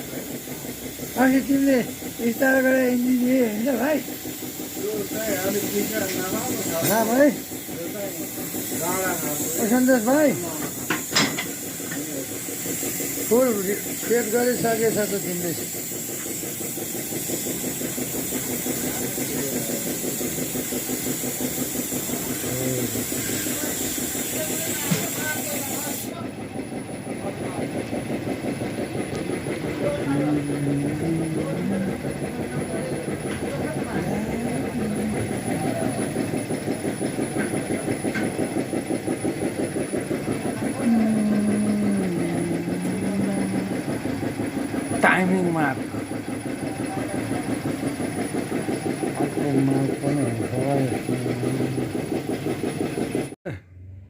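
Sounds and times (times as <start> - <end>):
excavator diesel engine running: 0.0 - 54.0
steady tone: 29.0 - 36.4, 40.7 - 45.0.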